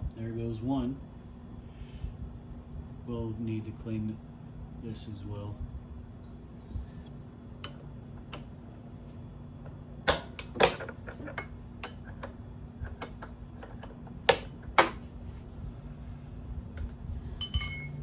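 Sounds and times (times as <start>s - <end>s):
faint hum: 0.0s - 18.0s
metal parts clinking: 17.4s - 18.0s
sharp metal clanks: 17.4s - 18.0s.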